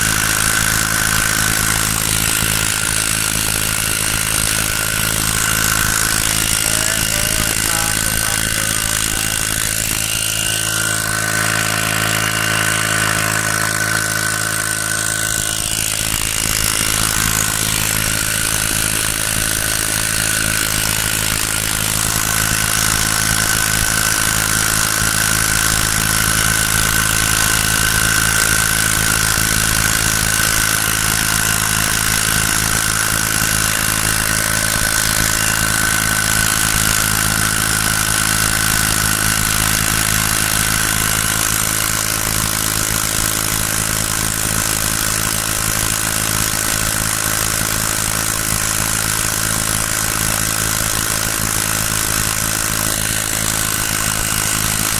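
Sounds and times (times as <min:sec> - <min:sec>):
small boat engine running: 0:00.0 - 0:54.9.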